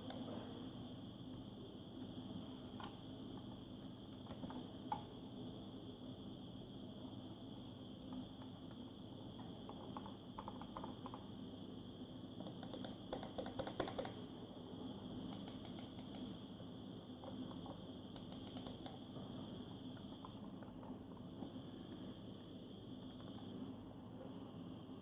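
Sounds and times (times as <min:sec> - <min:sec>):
faint steady hum: 0:00.0 - 0:25.0
quick light clicks: 0:18.1 - 0:19.0.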